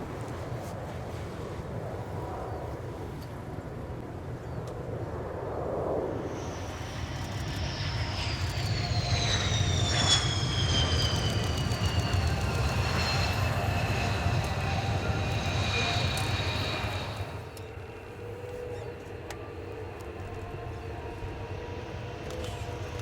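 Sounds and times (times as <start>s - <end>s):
jet engines roaring: 5.0s - 23.0s
high jet whine: 6.0s - 23.0s.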